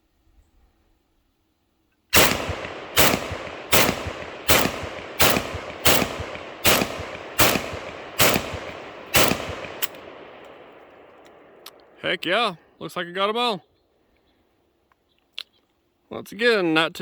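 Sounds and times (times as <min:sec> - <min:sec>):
pistol shots with echo: 0:02.1 - 0:12.0.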